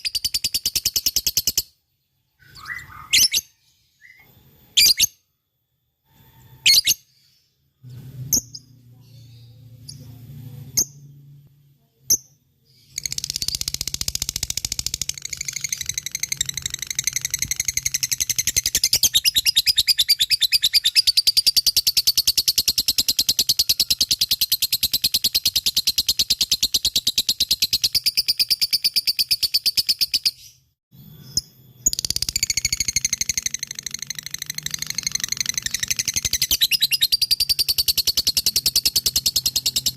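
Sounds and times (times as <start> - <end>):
lovebird chattering trill: 12.8 - 30.5, 31.8 - 39.9.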